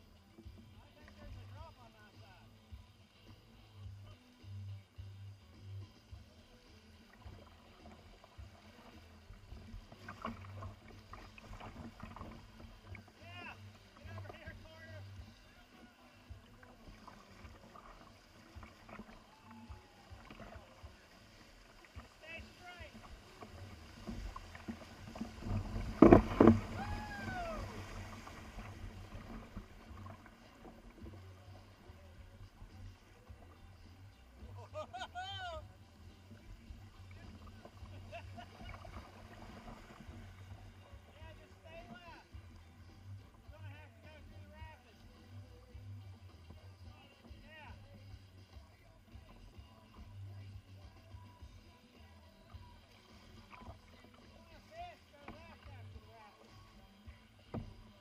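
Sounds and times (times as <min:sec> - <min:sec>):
low steady rumble: 0:00.0 - 0:58.0
water splashing and dripping: 0:16.3 - 0:31.8
knocks on a kayak: 0:25.4 - 0:26.9.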